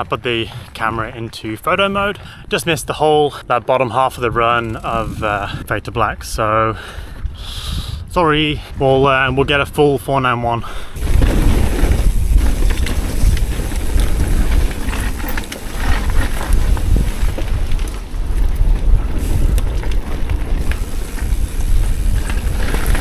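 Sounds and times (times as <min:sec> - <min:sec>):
bike tyres rumbling on dirt: 0:00.0 - 0:07.3, 0:08.7 - 0:23.0
wind buffeting microphone: 0:00.0 - 0:23.0
bike clicks and rattles: 0:11.0 - 0:23.0.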